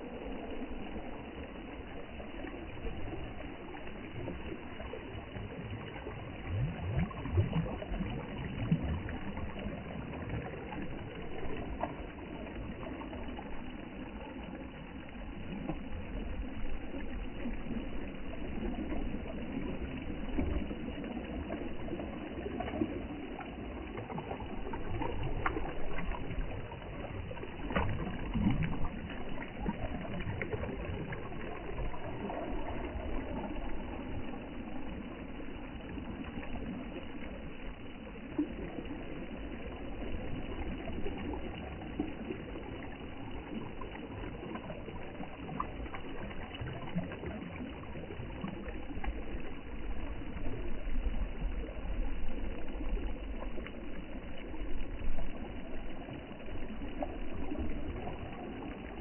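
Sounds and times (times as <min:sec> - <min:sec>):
continuous low rumble: 0:00.0 - 0:59.0
water washing and splashing: 0:17.0 - 0:51.0.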